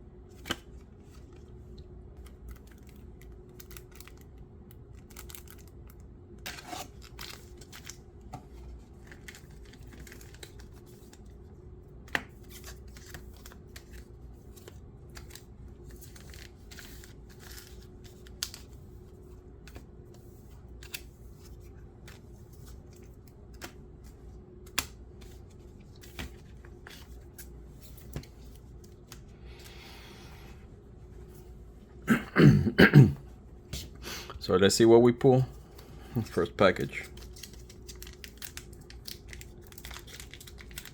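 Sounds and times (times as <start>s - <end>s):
faint steady hum: 0.0s - 40.9s
packaging rustling and scraping: 37.0s - 40.9s.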